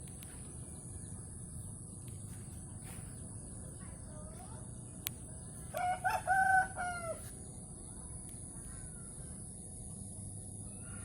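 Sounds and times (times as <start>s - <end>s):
rooster crowing: 5.7s - 7.3s.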